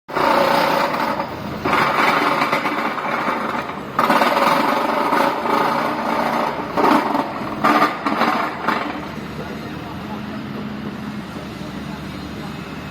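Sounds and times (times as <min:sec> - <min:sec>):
vibratory pile driver rattling: 0:00.1 - 0:09.5.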